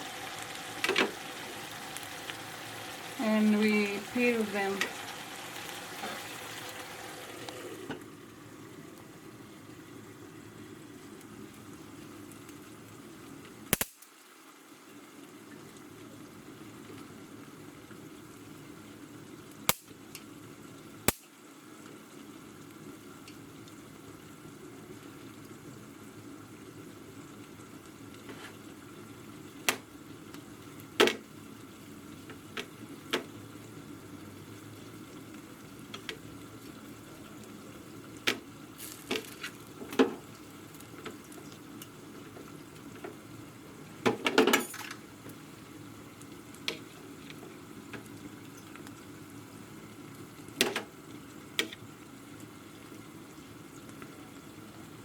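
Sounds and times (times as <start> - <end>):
chicken simmering in a pot: 0.0 - 55.0
kitchen utensils and dishes clinking: 44.2 - 45.0.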